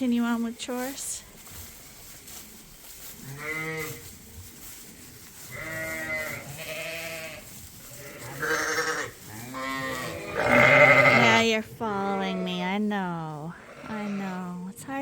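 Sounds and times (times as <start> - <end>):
sheep bleating: 3.3 - 4.0, 5.5 - 12.7, 13.5 - 14.4.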